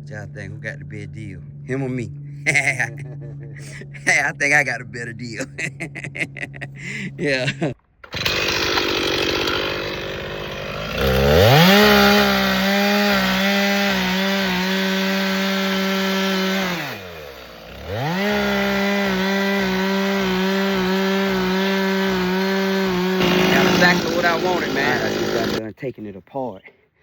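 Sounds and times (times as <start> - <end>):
chainsaw revving: 8.0 - 25.6.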